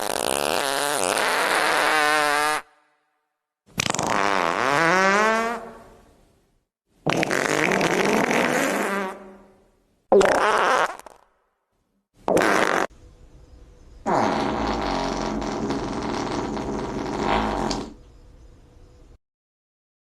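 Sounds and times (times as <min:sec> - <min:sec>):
buzzy fart sounds: 0:00.0 - 0:02.8, 0:03.8 - 0:06.0, 0:07.0 - 0:11.4, 0:12.2 - 0:12.9, 0:14.0 - 0:18.0.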